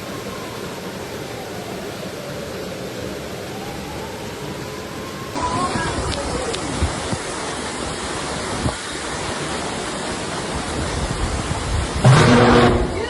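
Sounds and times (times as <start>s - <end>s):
torrential rain and rushing water: 0.0s - 13.0s.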